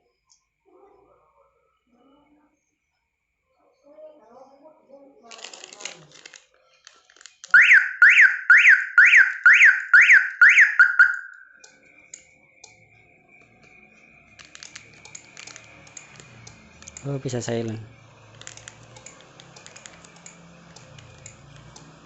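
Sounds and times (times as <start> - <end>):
car alarm siren whooping: 7.6 - 22.0
faint steady high tone: 7.7 - 18.1.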